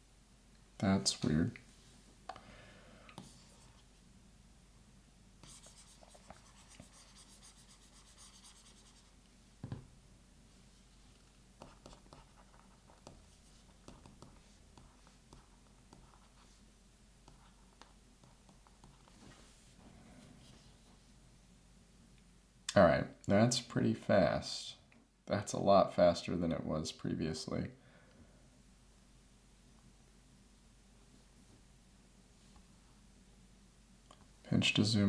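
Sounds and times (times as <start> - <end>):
soft knock: 9.6 - 9.9.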